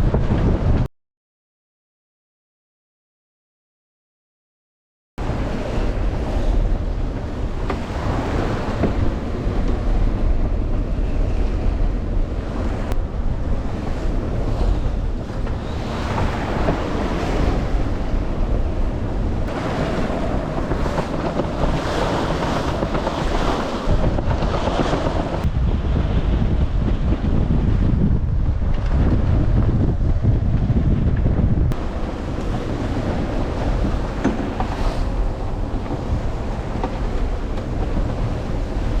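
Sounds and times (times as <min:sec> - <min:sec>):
wind buffeting microphone: 0:00.0 - 0:00.9, 0:05.2 - 0:39.0
waves rushing along hull: 0:05.2 - 0:39.0.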